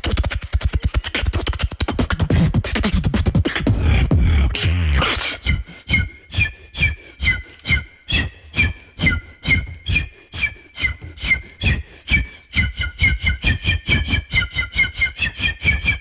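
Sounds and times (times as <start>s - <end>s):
beatboxing fast clicks: 0.0s - 5.8s
deep wavering bass hum: 3.2s - 5.6s
whistle-like chirps: 5.0s - 16.0s.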